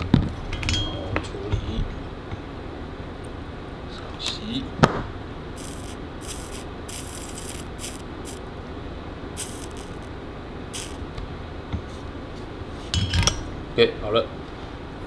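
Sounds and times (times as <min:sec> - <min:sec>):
soldering iron sizzling hiss: 0:05.5 - 0:08.6, 0:09.3 - 0:11.2.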